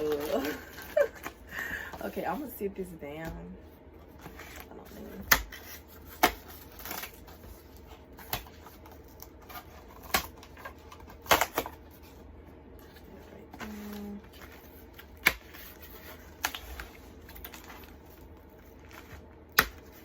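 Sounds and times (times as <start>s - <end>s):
packaging rustling: 0.0s - 2.1s.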